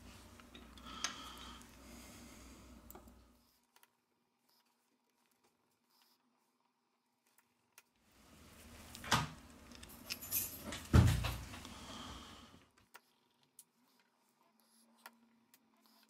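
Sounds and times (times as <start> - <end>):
tools rustling and clinking: 8.7 - 11.6.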